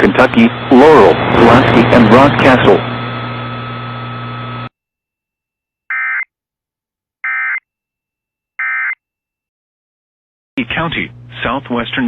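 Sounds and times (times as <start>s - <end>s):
broadcast hiss and hum: 0.0s - 4.7s, 10.6s - 12.0s.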